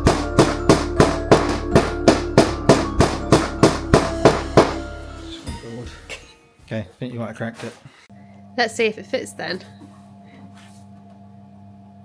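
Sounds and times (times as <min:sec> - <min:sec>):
music with steady drum beat: 0:00.0 - 0:06.1.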